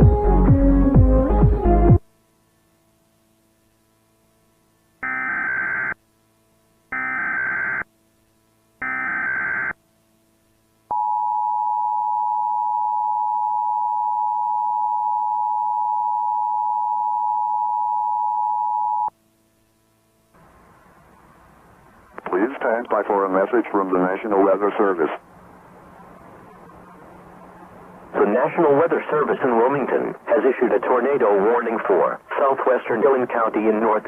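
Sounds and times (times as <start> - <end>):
data bursts: 8.8 - 9.8.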